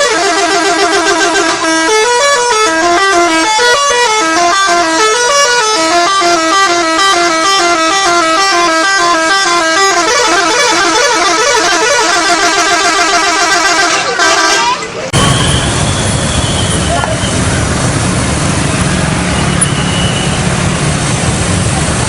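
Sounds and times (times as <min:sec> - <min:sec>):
bus musical horn tune: 0:00.0 - 0:16.6.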